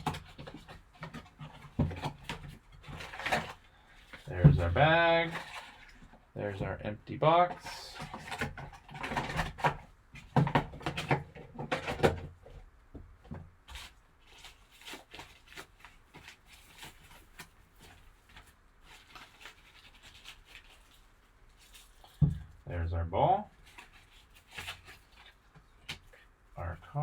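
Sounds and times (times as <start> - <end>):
foil bag crinkling: 13.8 - 22.2.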